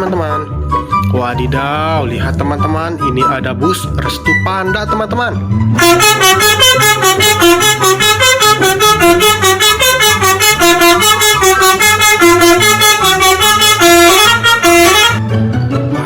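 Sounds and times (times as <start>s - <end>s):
multi-tone horn melody: 5.8s - 15.2s.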